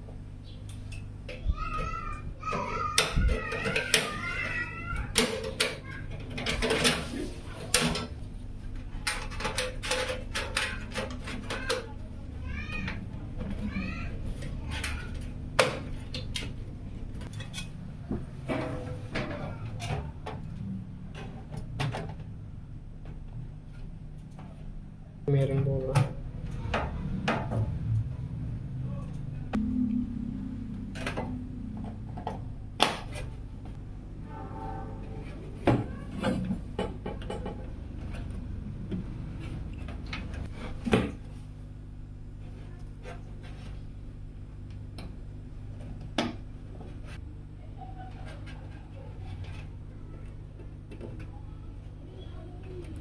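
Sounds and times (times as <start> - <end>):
steady low hum: 12.0 - 53.0
low hum: 26.3 - 40.7
short pitched tone: 29.6 - 31.7, 34.1 - 35.8.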